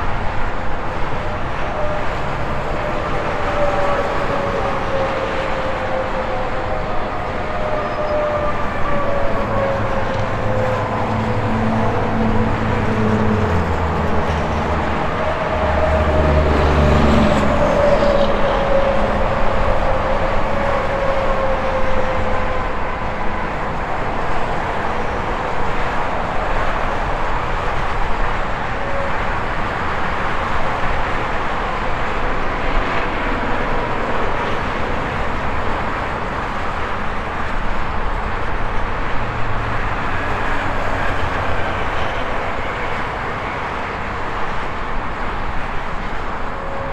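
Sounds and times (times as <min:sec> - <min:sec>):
highway traffic: 0:00.0 - 0:46.9
large vehicle rumbling past: 0:07.2 - 0:20.6.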